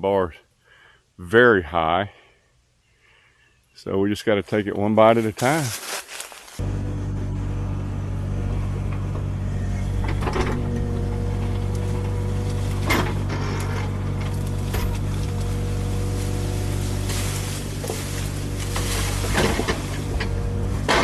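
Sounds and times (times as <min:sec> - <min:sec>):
diesel engine running: 0:05.4 - 0:21.0.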